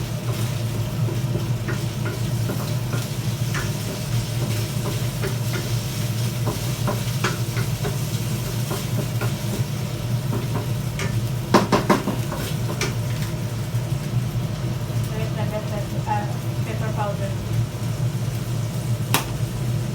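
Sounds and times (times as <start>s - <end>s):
meat sizzling in a pan: 0.0s - 19.9s
spatula scraping and knocking pan: 0.2s - 13.3s
steady low hum: 12.7s - 19.9s.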